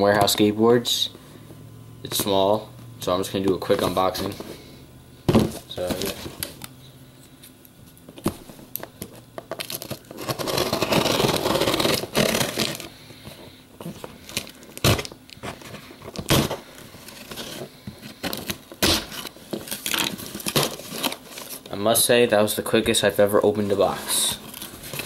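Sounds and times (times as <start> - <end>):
box knocks and scrapes: 5.3 - 6.4
tape and cardboard ripping: 9.4 - 12.9, 14.3 - 17.5, 18.2 - 21.7.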